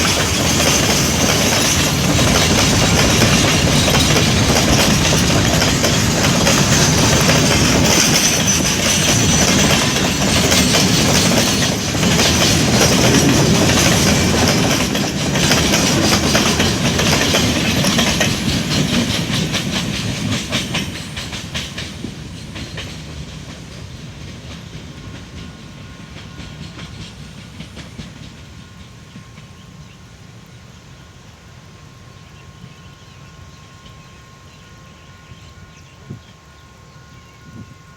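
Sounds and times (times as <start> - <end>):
freight train wheels clacking: 0.0 - 30.0.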